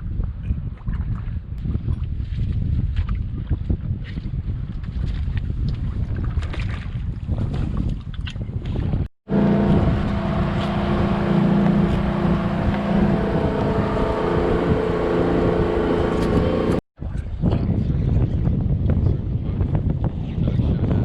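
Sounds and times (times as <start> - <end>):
wind buffeting microphone: 0.0 - 21.0
engine droning steadily: 9.3 - 16.8.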